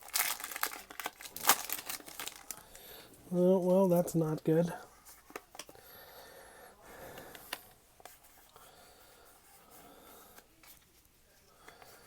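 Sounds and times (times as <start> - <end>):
trading cards and foil packs rustling: 0.0 - 3.0.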